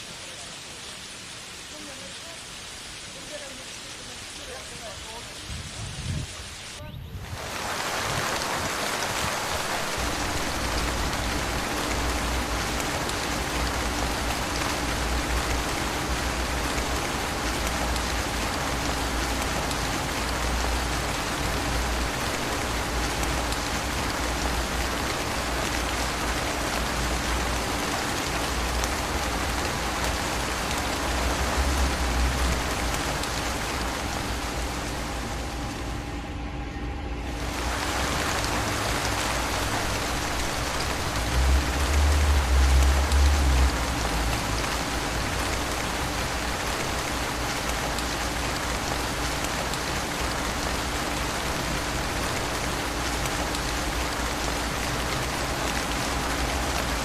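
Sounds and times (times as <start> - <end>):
steady rain falling: 0.0 - 36.4, 37.2 - 57.0
low rumble: 30.7 - 39.0.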